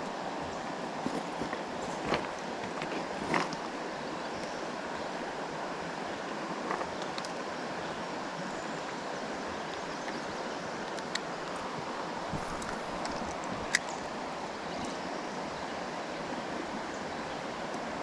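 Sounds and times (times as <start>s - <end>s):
stream water rushing: 0.0s - 18.0s.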